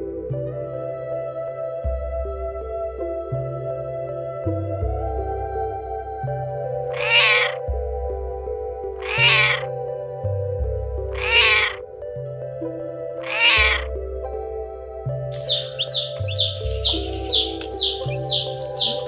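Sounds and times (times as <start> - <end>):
soft background music: 0.0 - 19.0
cat meowing: 6.9 - 7.6, 9.0 - 9.7, 11.2 - 11.8, 13.2 - 13.9, 15.4 - 19.0.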